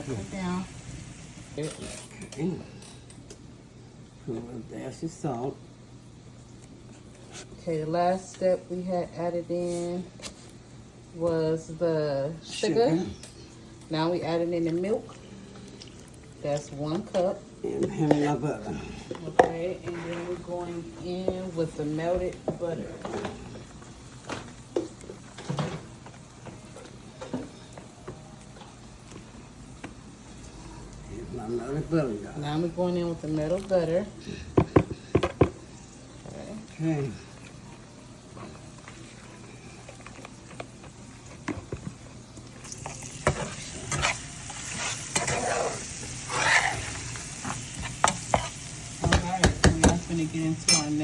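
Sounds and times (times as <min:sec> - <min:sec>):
gravy sizzling: 0:00.0 - 0:02.4, 0:03.3 - 0:51.0
kitchen utensils clinking: 0:42.7 - 0:51.0.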